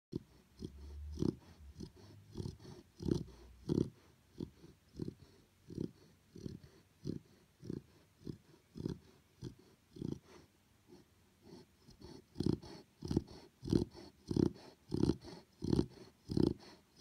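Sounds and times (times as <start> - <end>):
puppy snoring: 0.1 - 17.0.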